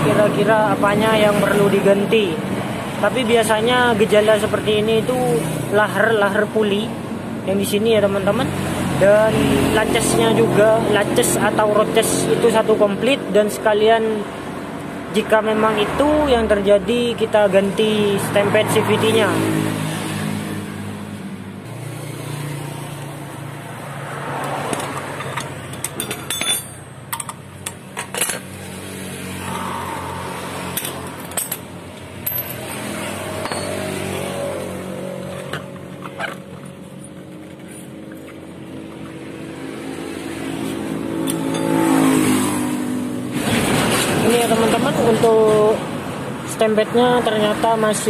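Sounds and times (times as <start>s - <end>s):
engine hum: 14.2s - 46.5s
metal tool clicks and clinks: 24.7s - 28.5s, 30.7s - 33.8s, 41.2s - 41.8s.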